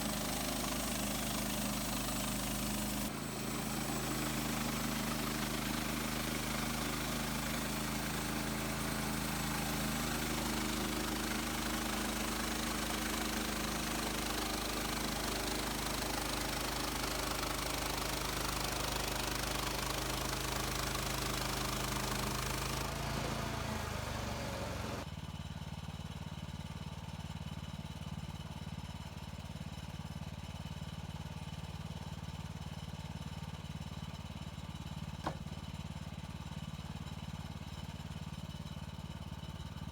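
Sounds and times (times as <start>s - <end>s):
sawmill engine running: 0.0s - 25.1s, 35.2s - 35.5s.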